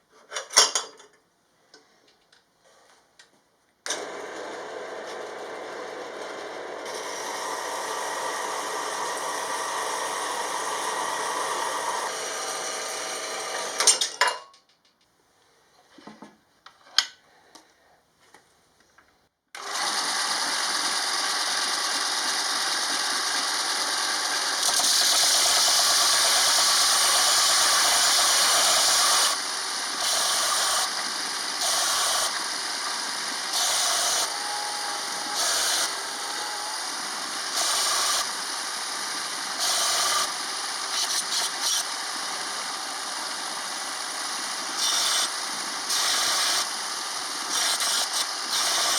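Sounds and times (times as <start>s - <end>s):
power tool running: 3.9s - 14.0s, 19.6s - 48.9s
hissing machine: 19.6s - 48.9s.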